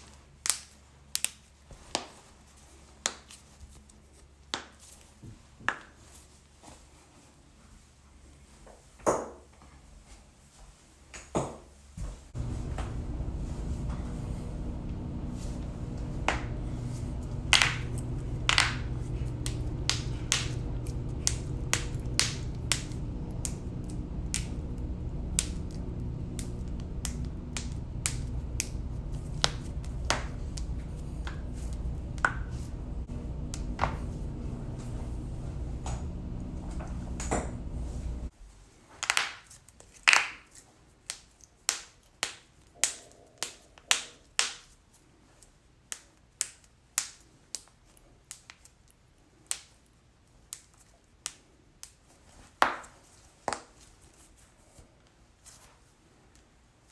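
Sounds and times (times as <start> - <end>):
low background hum: 12.0 - 38.7.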